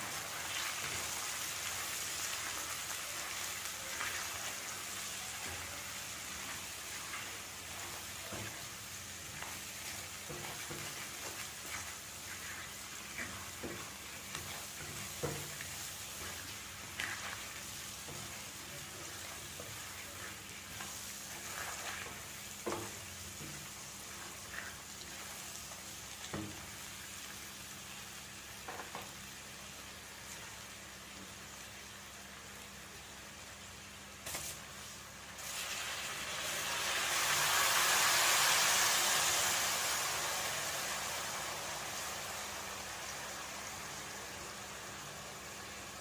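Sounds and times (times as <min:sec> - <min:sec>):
food sizzling in hot oil: 0:00.0 - 0:46.0
spoon stirring and scraping pot: 0:09.3 - 0:25.5.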